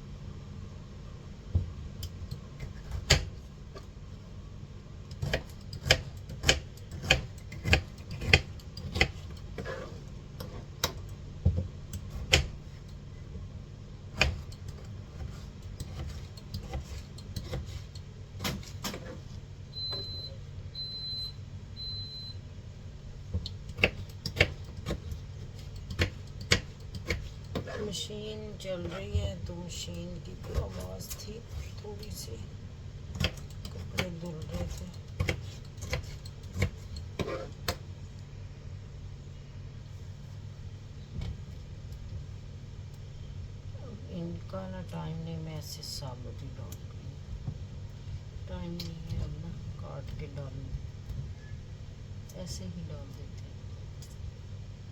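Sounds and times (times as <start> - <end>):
washing machine hum: 0.0 - 54.9
knife cutting on a board: 5.2 - 11.0, 14.2 - 19.3, 23.8 - 27.9, 33.2 - 37.8.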